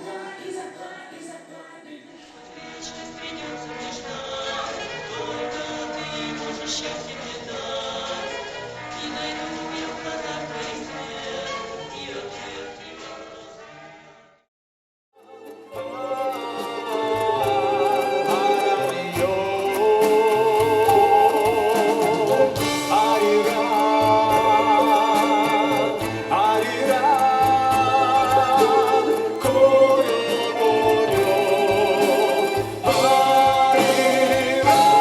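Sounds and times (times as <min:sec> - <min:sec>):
instrumental accompaniment: 0:15.2 - 0:35.0
woman singing with vibrato: 0:15.8 - 0:35.0.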